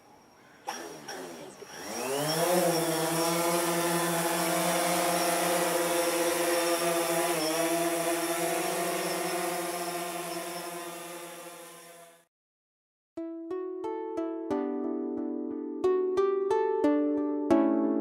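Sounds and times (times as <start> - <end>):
drone propeller buzz: 0.6 - 12.3.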